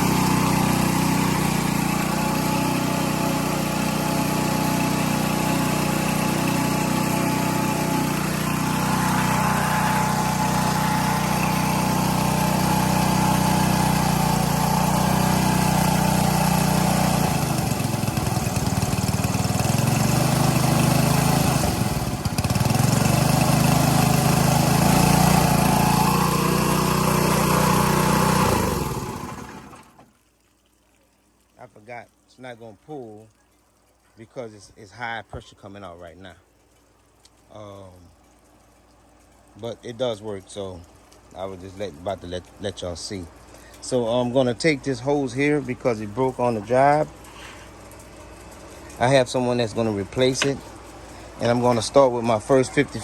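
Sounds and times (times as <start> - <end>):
pressure washer engine running: 0.0 - 30.1, 40.5 - 53.0.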